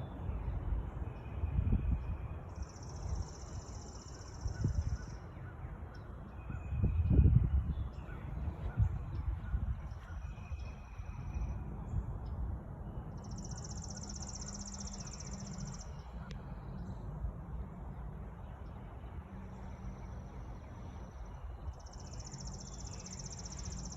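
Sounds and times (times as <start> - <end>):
steady low rumble: 4.4 - 23.9
high-pitched insect trills: 13.2 - 15.9, 21.8 - 23.9.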